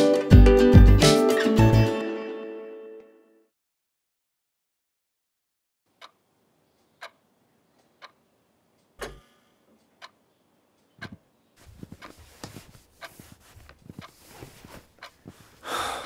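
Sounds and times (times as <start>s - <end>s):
clock ticking: 5.9s - 15.6s
rustling and knocks: 11.0s - 15.6s.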